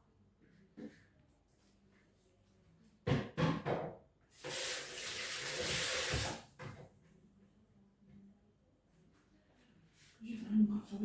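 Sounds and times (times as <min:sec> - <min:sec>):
knocks in kitchen: 0:03.0 - 0:04.0
water tap running: 0:04.4 - 0:06.4.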